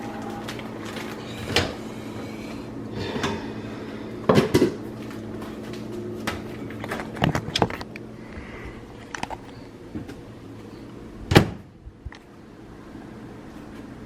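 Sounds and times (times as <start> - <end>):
steady low hum: 0.0 - 14.0
kitchen knocks and clatters: 4.3 - 4.8.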